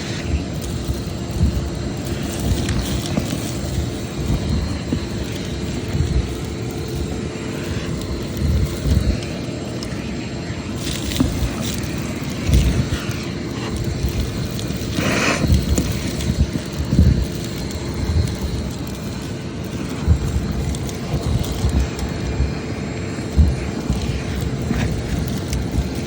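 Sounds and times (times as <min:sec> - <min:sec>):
vacuum cleaner running: 0:00.0 - 0:26.0.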